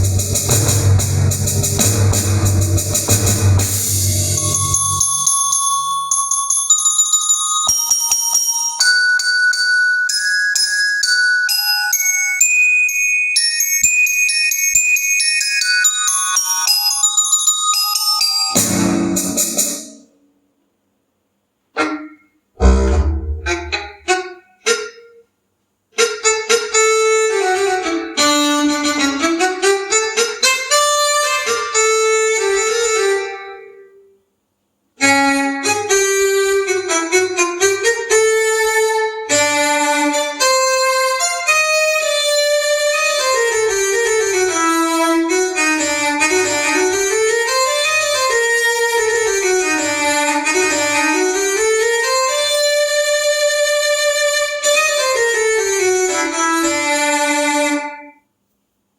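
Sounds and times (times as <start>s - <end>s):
electronic keyboard melody: 0.0s - 6.2s.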